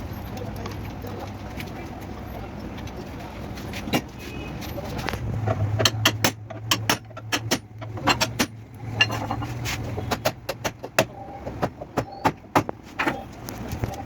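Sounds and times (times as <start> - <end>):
metal tools tapping car panel: 5.4 - 13.3.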